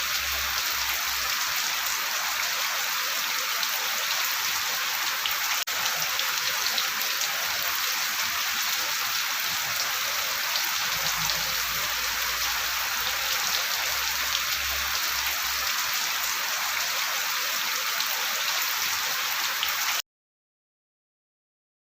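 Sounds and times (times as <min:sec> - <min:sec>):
steady rain falling: 0:00.0 - 0:20.0
rain drops ticking: 0:05.1 - 0:16.3.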